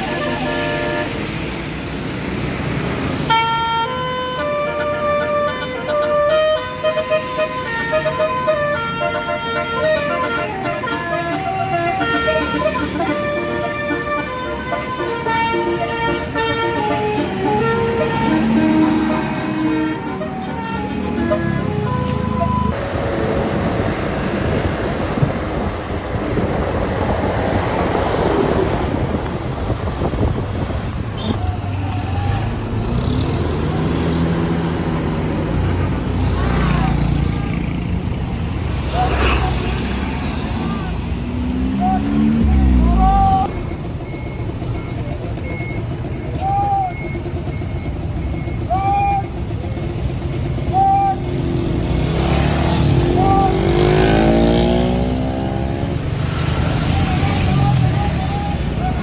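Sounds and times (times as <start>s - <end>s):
bus engine running: 0.0s - 59.0s
wind buffeting microphone: 22.7s - 31.5s
reversing alarm beeps: 42.7s - 48.8s.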